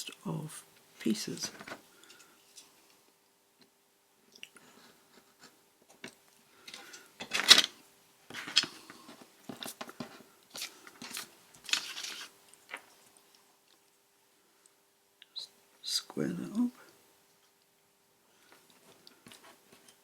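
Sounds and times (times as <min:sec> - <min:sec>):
paper rustling: 0:01.0 - 0:01.8, 0:08.3 - 0:13.2.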